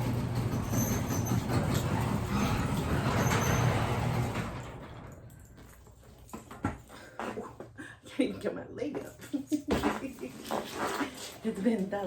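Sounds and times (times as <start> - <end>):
garage door motor hum: 0.0 - 5.3
garage door rattling: 0.0 - 5.5.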